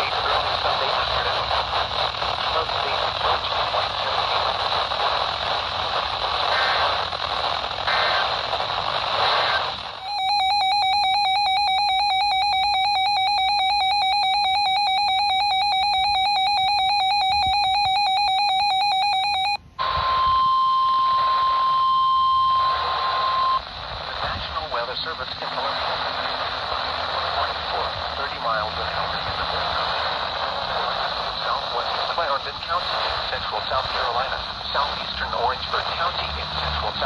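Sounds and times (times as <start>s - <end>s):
data header bursts: 0.0s - 19.6s
radio static: 0.0s - 37.0s
fast warbling electronic alarm: 10.0s - 23.6s
steady warning tone: 10.0s - 23.6s.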